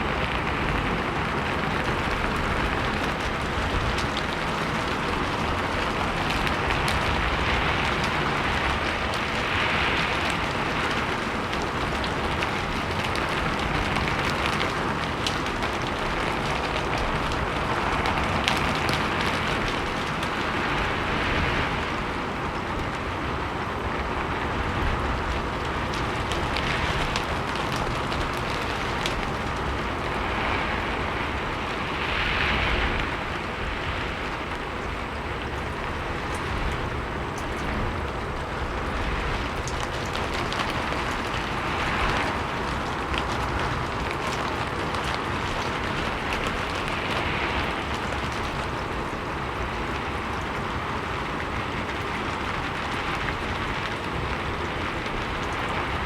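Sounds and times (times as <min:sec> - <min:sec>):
rain falling on a roof: 0:00.0 - 0:56.0.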